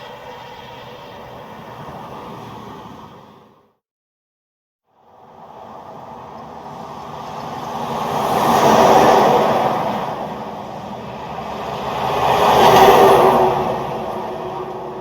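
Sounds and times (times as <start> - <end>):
cars driving past: 5.1 - 15.0.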